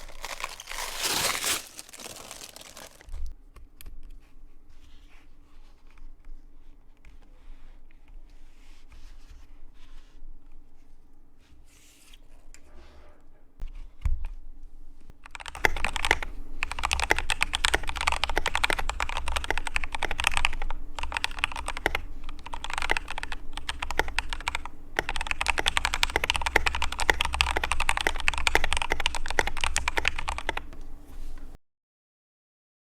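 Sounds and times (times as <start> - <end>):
keyboard typing clatter: 15.2 - 30.9.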